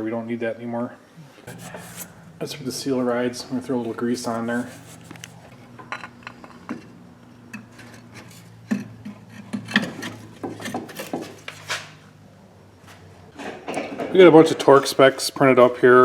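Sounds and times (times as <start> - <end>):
steady low hum: 0.0 - 13.7.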